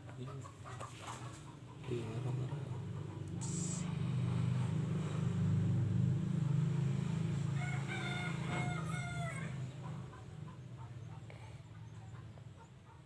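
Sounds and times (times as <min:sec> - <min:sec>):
rooster crowing: 0:07.3 - 0:09.9.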